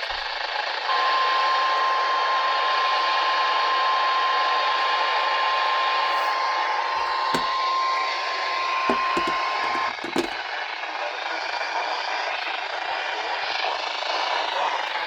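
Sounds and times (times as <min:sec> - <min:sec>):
knocks: 0:07.0 - 0:07.6, 0:08.9 - 0:10.4.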